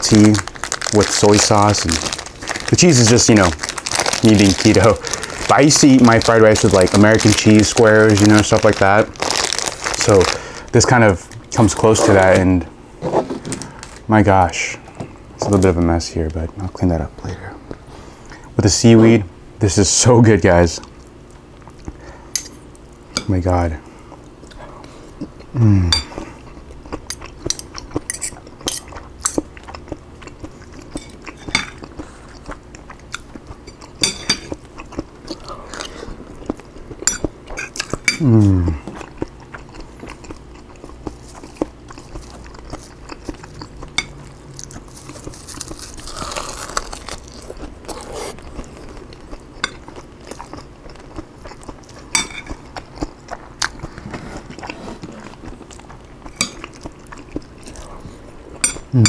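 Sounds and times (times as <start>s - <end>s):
chewing: 23.8s - 59.0s
person's vocal sound of enjoyment: 38.2s - 38.8s.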